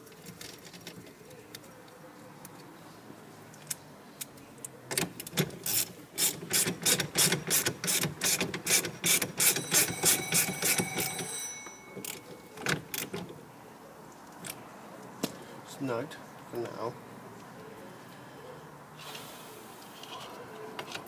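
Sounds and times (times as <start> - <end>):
ratchet wrench clicking: 5.6 - 10.8.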